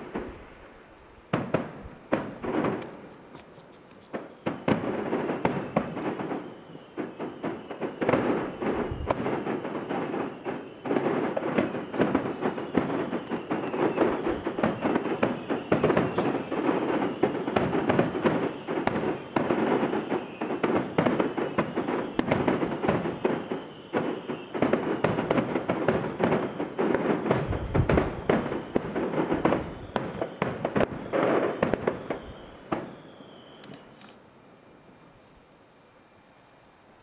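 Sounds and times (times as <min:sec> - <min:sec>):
distant fireworks bangs and crackle: 0:00.0 - 0:35.1
deep firework boom: 0:07.2 - 0:23.2, 0:27.3 - 0:32.5.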